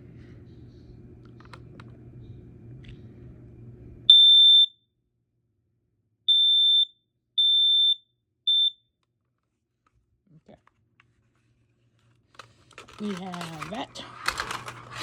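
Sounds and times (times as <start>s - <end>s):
smoke alarm beeps: 4.1s - 4.8s, 6.3s - 8.9s.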